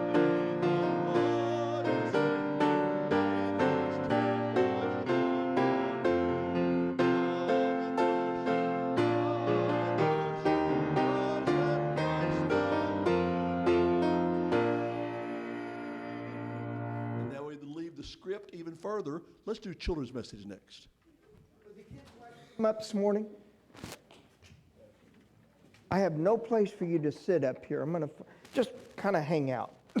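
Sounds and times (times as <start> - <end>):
piano chords: 0.0 - 17.4.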